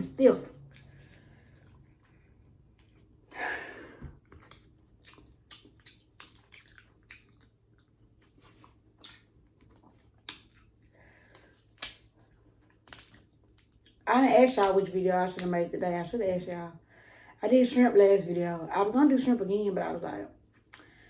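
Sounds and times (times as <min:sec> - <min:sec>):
wet chewing and mouth smacks: 0:00.6 - 0:03.3, 0:04.0 - 0:14.0, 0:20.4 - 0:21.0.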